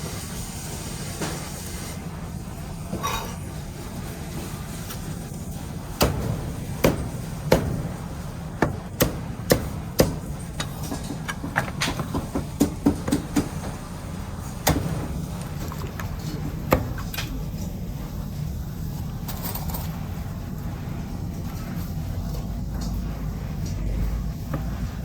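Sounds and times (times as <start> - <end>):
cleaver chopping meat: 8.6 - 13.6.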